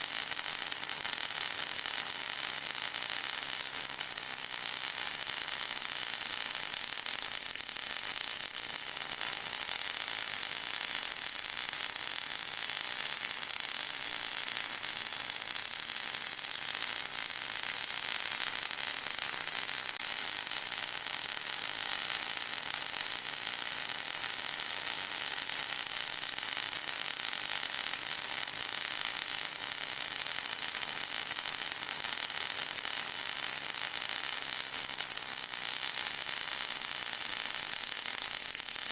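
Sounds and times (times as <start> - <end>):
high-pitched hiss with crackle: 0.0 - 38.9.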